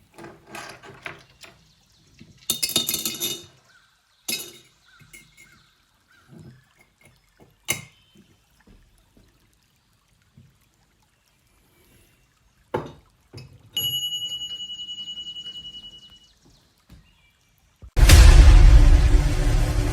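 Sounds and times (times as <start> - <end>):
metal object struck ringing: 18.0 - 19.9.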